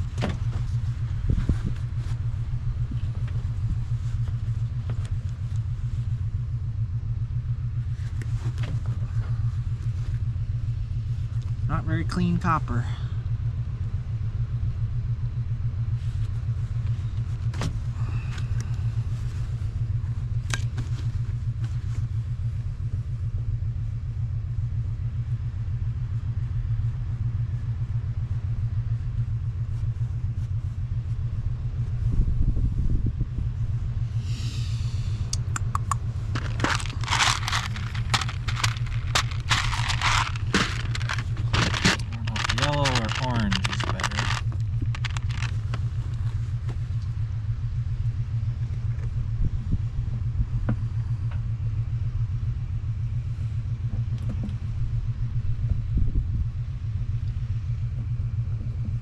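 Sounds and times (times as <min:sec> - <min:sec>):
engine rumbling: 0:00.0 - 0:59.0
scraping and clicking handling noises: 0:36.3 - 0:46.4.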